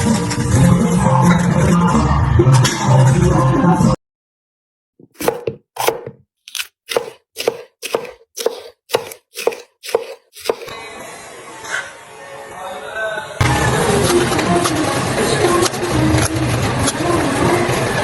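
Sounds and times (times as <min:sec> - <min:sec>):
knife chopping on cutting board: 0:05.0 - 0:10.7.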